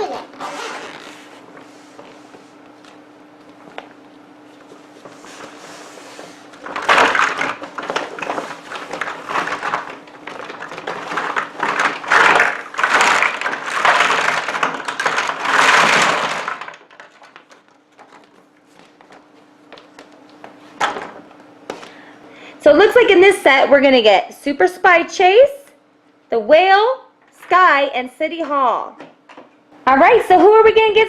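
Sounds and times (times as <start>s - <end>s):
plastic bag crinkling: 5.3s - 19.2s
plastic blocks clattering: 6.6s - 18.2s.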